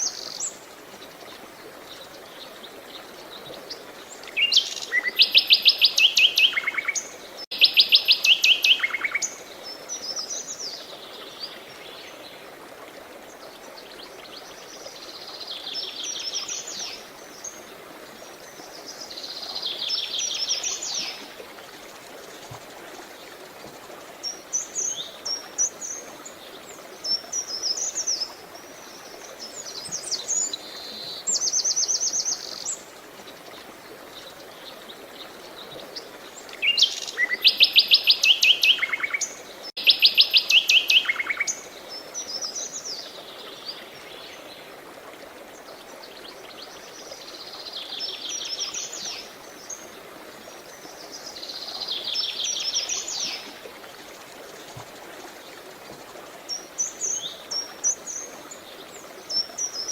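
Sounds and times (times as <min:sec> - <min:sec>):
songbirds singing and trilling: 0:00.0 - 0:12.5, 0:24.2 - 0:44.7
running water hiss: 0:00.0 - 0:59.9.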